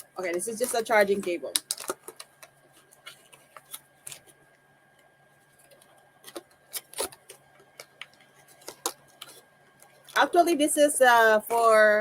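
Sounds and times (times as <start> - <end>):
cable and plastic packaging clicks: 0.6 - 4.3, 5.6 - 10.2.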